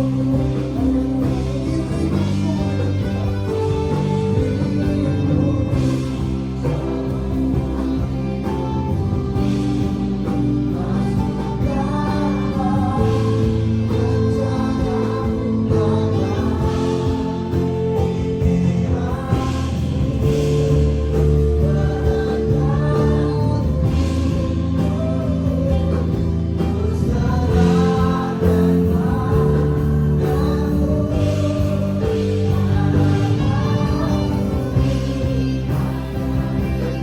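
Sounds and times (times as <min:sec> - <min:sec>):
band with keyboard and bass: 0:00.0 - 0:37.0
group of singers: 0:00.0 - 0:37.0.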